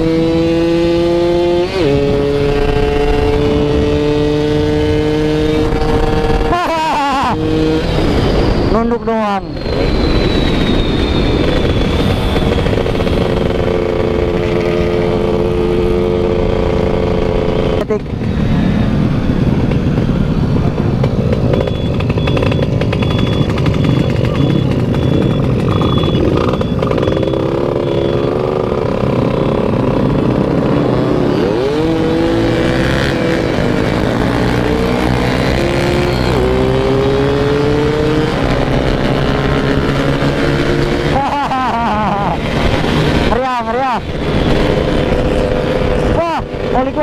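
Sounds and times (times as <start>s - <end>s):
heavy wind noise: 0.0s - 47.0s
motorcycle engine accelerating: 0.0s - 47.0s.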